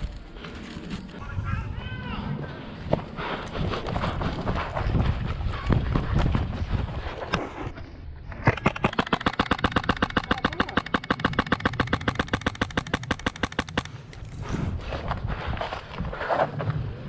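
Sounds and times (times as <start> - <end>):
airsoft rifle full-auto burst: 8.5 - 14.0.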